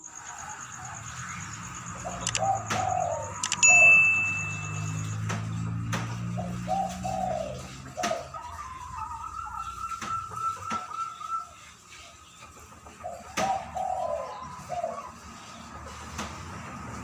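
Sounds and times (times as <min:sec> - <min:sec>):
dove cooing: 0:00.4 - 0:05.3, 0:06.2 - 0:11.7, 0:12.6 - 0:15.5
clicks: 0:02.2 - 0:02.8, 0:03.4 - 0:05.4
sharp ringing ping: 0:03.6 - 0:05.3.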